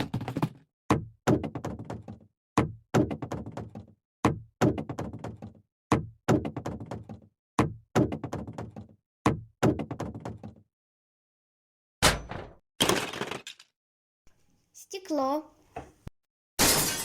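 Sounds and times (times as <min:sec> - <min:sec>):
items bouncing rattle: 0:00.0 - 0:00.6, 0:12.8 - 0:13.7
items knocking into container: 0:00.0 - 0:00.6, 0:12.0 - 0:13.7.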